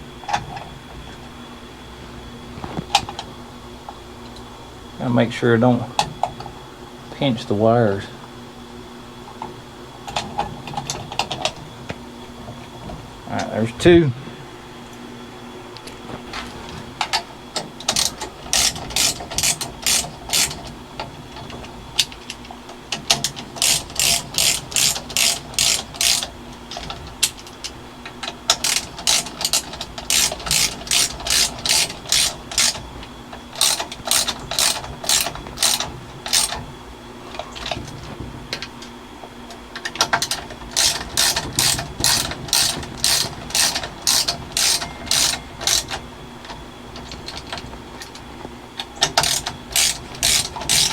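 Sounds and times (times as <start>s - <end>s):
ratchet wrench clicking: 17.9s - 20.6s, 23.6s - 26.3s, 28.5s - 32.8s, 33.6s - 36.6s, 40.8s - 46.0s, 49.0s - 50.9s.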